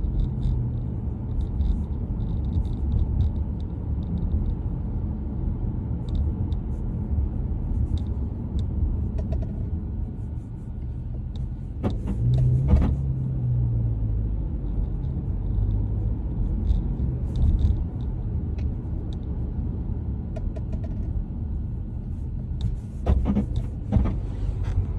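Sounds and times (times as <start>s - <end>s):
faint ticks and rattles: 0.0s - 4.9s, 14.6s - 19.6s
road rumble inside car: 0.0s - 24.9s
car knocking over bumps: 11.8s - 13.0s, 23.0s - 24.8s.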